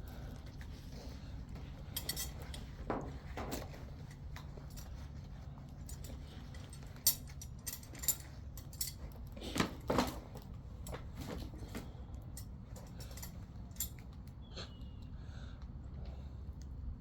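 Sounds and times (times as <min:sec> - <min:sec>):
steady low hum: 0:00.0 - 0:17.0
metallic clinks: 0:01.9 - 0:02.7, 0:05.7 - 0:09.1, 0:12.3 - 0:14.0.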